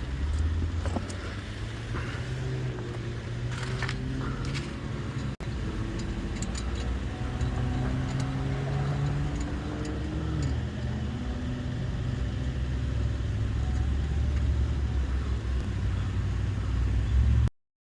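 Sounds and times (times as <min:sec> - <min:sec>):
road rumble: 0:00.0 - 0:17.5
vehicle engine running: 0:00.0 - 0:17.5.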